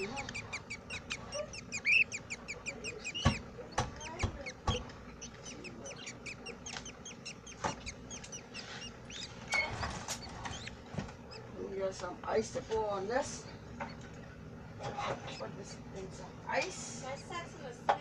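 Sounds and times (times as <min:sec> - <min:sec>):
budgerigars chirping: 0:00.0 - 0:11.7, 0:13.6 - 0:15.9
sharp knocks: 0:03.1 - 0:05.0.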